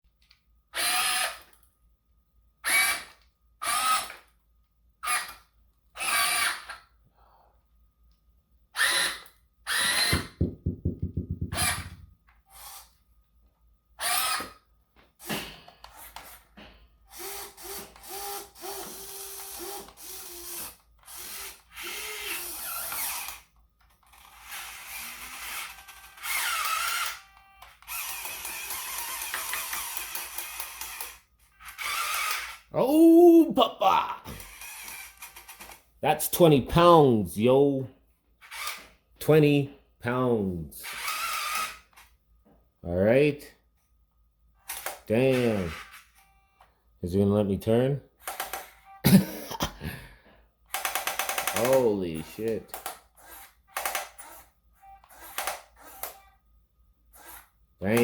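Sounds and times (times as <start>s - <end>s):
small electric motor whining: 0.7s - 1.6s, 2.6s - 4.3s, 5.0s - 6.9s, 8.7s - 10.5s, 11.5s - 13.0s, 14.0s - 14.6s, 17.1s - 32.7s, 34.3s - 35.7s, 40.8s - 42.0s, 52.8s - 56.4s, 57.1s - 57.6s.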